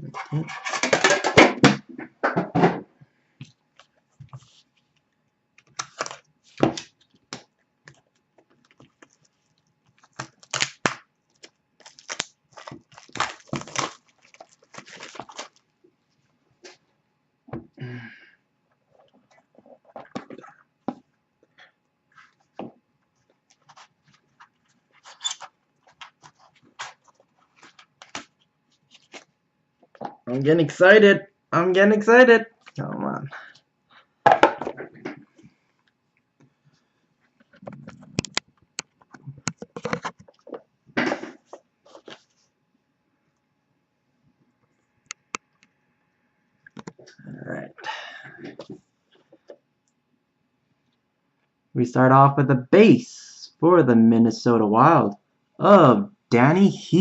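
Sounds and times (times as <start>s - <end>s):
packaging crinkling and tearing: 5.6s - 15.7s, 23.5s - 29.3s.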